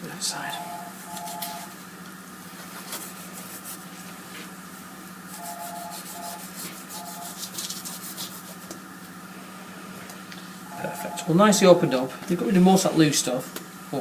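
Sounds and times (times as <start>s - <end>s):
steady low hum: 0.0s - 14.0s
knife scraping through meat: 5.3s - 8.7s.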